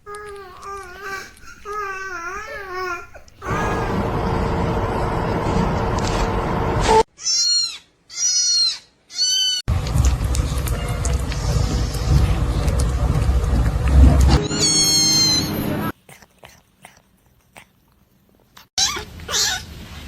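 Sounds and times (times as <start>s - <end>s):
low rumbling noise: 3.4s - 7.0s, 9.7s - 15.9s
wavering babbling cries: 14.4s - 15.9s.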